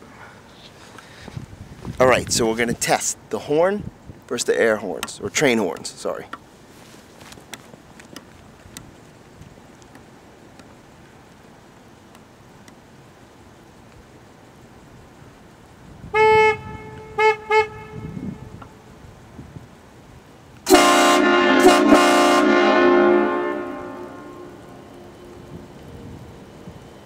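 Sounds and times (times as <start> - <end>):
faint clicks: 7.3 - 12.8
low steady rumble: 7.8 - 27.0
air train horn chord: 16.1 - 18.5, 20.7 - 25.2
car horn honking: 16.1 - 18.6, 20.7 - 24.9.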